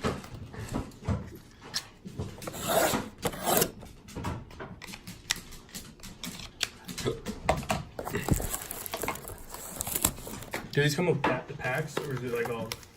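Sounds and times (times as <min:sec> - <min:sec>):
card packs rustling: 0:04.8 - 0:12.9
crinkly rustles: 0:08.0 - 0:11.0.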